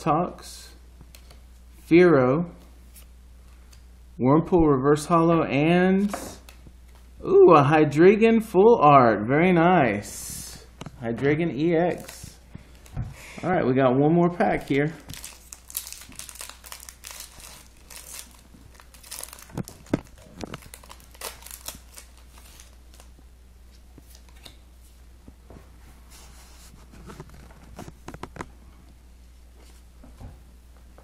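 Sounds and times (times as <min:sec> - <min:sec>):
foil wrapper tearing and crinkling: 0:15.0 - 0:23.1.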